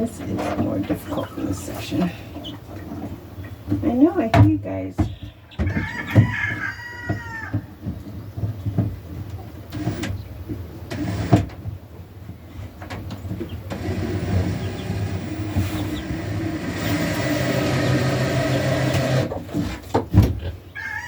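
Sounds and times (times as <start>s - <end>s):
whirring hum: 9.6s - 20.4s.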